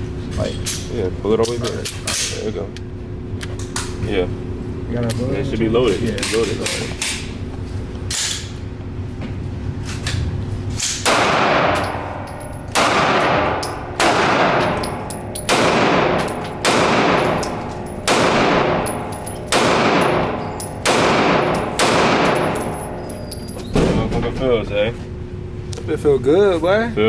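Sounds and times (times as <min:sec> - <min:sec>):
pistol shots with long echo: 0:11.0 - 0:22.8.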